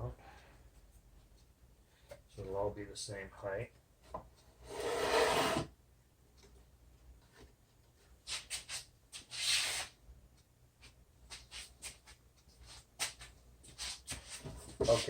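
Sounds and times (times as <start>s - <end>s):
hand tool scraping wood: 4.6s - 5.7s.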